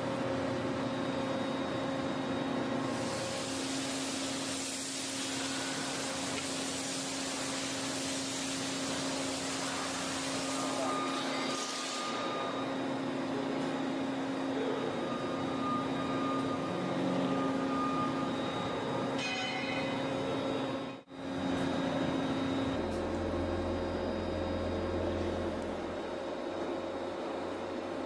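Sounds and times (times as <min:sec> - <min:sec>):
machine hum: 0:00.0 - 0:28.0
high whine: 0:09.0 - 0:28.0.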